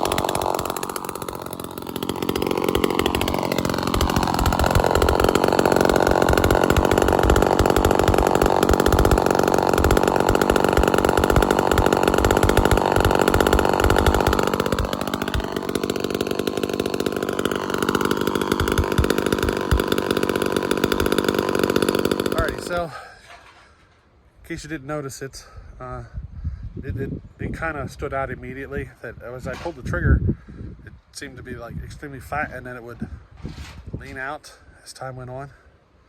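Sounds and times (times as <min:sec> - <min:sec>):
chainsaw engine running: 0:00.0 - 0:23.4.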